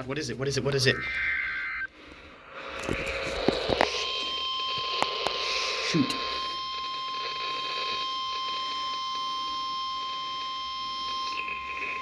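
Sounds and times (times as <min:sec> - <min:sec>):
steady warning alarm tone: 0:00.9 - 0:12.0.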